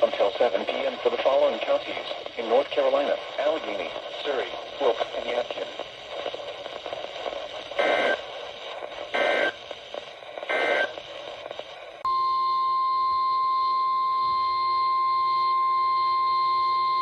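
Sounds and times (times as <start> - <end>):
radio static: 0.0 - 12.0.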